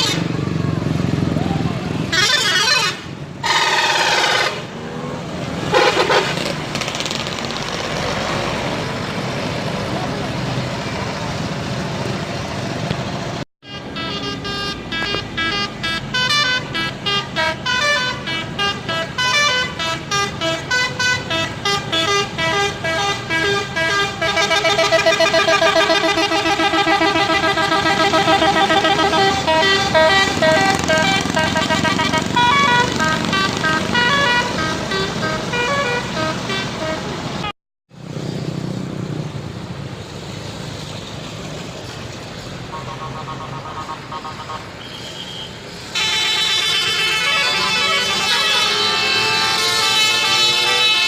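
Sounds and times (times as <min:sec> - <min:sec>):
multi-tone air horn: 0:02.0 - 0:04.9, 0:05.6 - 0:06.5, 0:13.6 - 0:37.5, 0:42.7 - 0:51.0.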